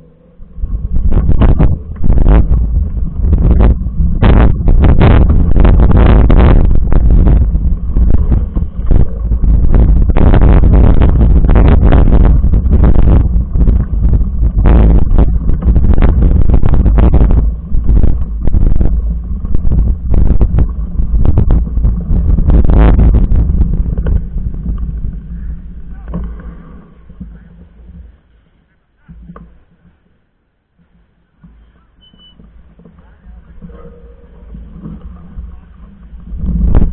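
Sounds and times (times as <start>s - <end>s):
wind buffeting microphone: 0.0s - 28.4s, 31.4s - 36.9s
bike knocking and rattling: 0.8s - 30.2s.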